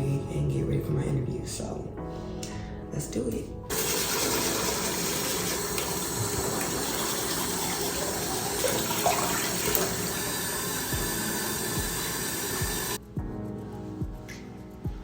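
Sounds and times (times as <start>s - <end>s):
tap running into sink: 3.7s - 13.0s.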